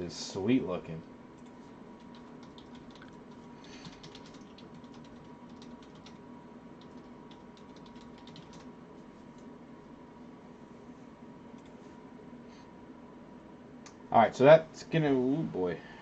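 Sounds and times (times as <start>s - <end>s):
electrical hum: 0.0s - 16.0s
typing on computer keyboard: 2.0s - 6.2s, 6.8s - 8.7s.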